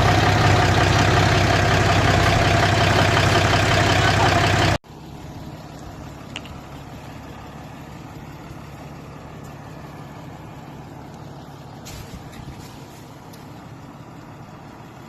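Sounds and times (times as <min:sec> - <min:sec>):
vehicle engine humming: 0:00.0 - 0:15.0
short hiss: 0:11.8 - 0:13.2.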